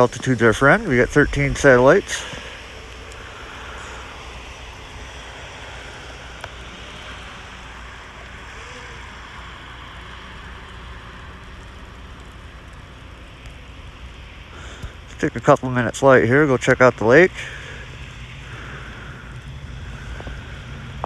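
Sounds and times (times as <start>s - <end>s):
wind rushing across microphone: 0.0s - 6.8s.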